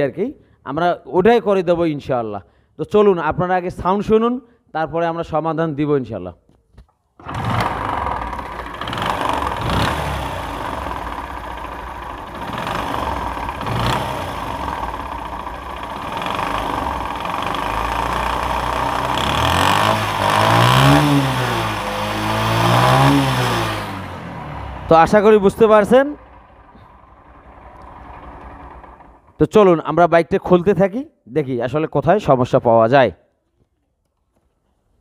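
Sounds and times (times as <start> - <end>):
motorcycle engine knocking and revving: 7.2 - 29.4.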